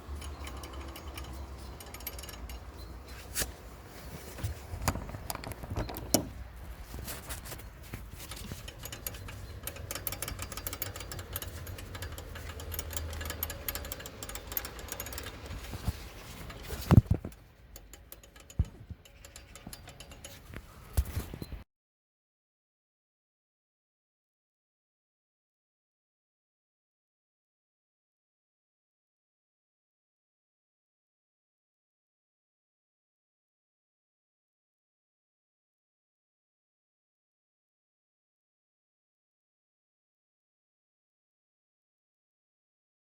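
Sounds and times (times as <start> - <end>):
engine ticking and clicks: 0.0 - 3.6, 4.5 - 21.6.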